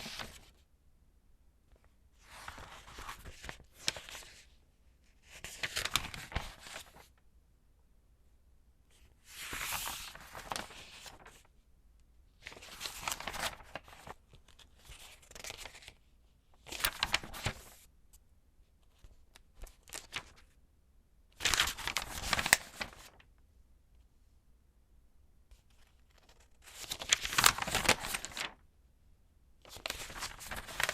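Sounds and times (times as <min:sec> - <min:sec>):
magazine pages turning: 0:00.0 - 0:00.6, 0:02.2 - 0:04.4, 0:05.2 - 0:07.2, 0:09.2 - 0:11.5, 0:12.4 - 0:16.0, 0:16.6 - 0:17.8, 0:19.6 - 0:20.5, 0:21.4 - 0:23.2, 0:25.7 - 0:28.6, 0:29.7 - 0:30.9.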